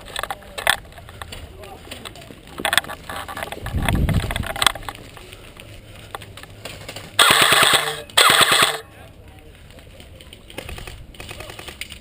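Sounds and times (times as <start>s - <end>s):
automatic airsoft gunfire: 7.2s - 8.8s.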